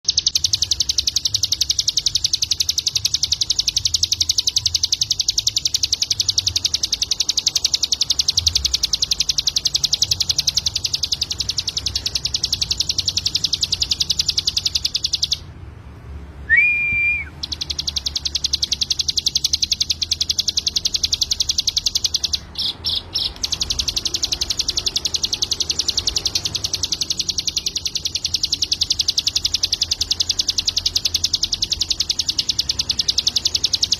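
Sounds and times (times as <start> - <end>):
bird singing fast high trill: 0.0 - 15.6, 16.4 - 33.9
bird whistled rising note: 16.5 - 22.3.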